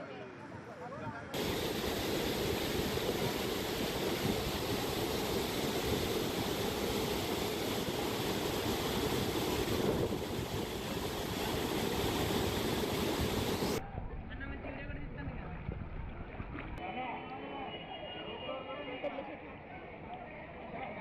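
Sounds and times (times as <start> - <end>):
rushing floodwater: 1.4 - 13.8.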